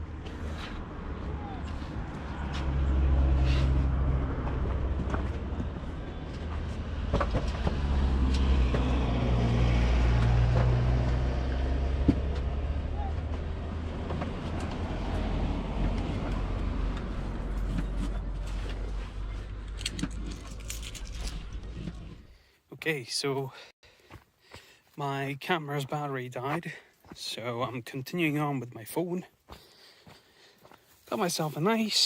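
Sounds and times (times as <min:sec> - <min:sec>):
vehicle engine droning: 0:00.0 - 0:22.4.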